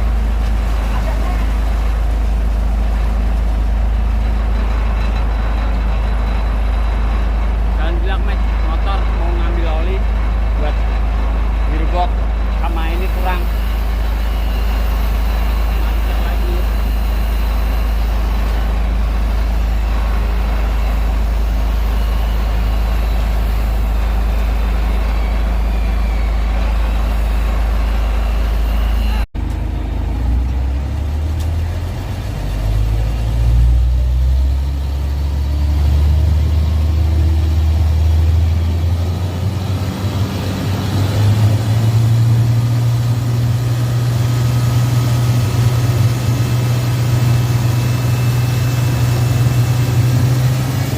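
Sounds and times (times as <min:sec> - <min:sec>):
diesel truck engine running: 0:00.0 - 0:50.9
engine revving higher: 0:32.3 - 0:50.9.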